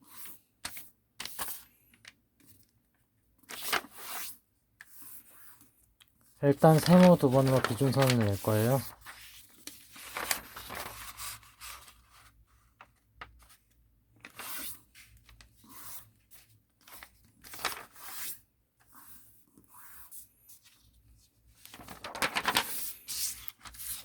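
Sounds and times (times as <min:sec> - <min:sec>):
paper rustling and creasing: 0:03.4 - 0:04.4, 0:06.5 - 0:18.4, 0:20.6 - 0:24.0.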